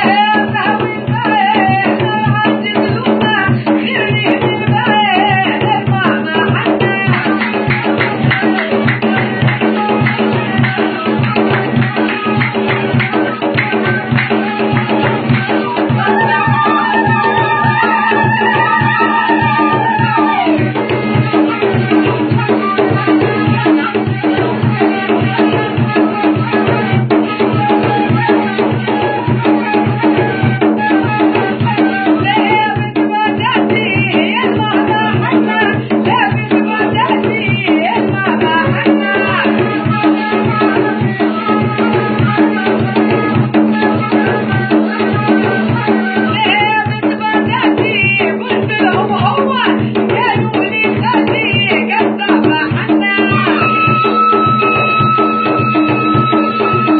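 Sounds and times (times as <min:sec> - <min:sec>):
fast hand percussion: 0:00.0 - 0:56.9
reed flute melody: 0:15.1 - 0:32.3, 0:53.4 - 0:56.9.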